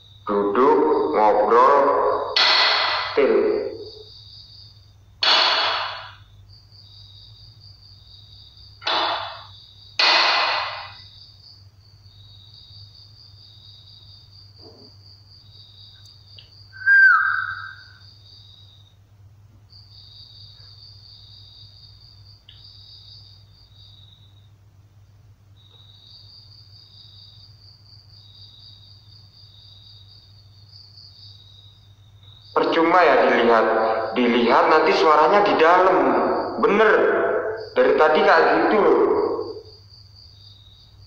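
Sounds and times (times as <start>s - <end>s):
crickets chirring: 0.0s - 41.0s
low electrical hum: 17.4s - 39.0s.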